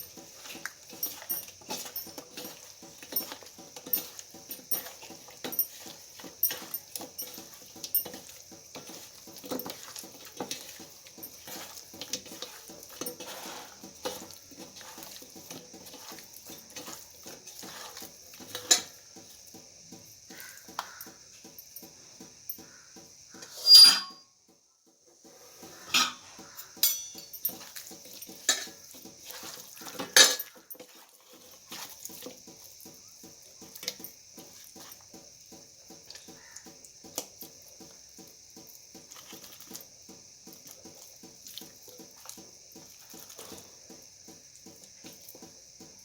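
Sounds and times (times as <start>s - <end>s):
bowl and utensils clattering: 0.0s - 19.3s, 23.4s - 24.2s, 25.6s - 32.4s.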